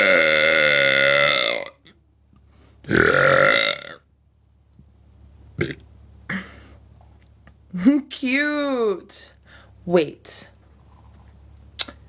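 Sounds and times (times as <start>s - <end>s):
woman belching: 0.0s - 1.8s, 2.9s - 4.0s, 5.6s - 6.5s.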